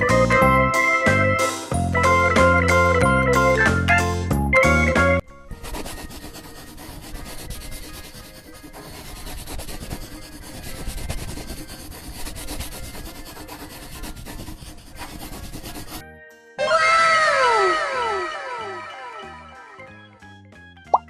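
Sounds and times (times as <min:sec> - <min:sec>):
drawing tool scratching paper: 0:05.4 - 0:16.0.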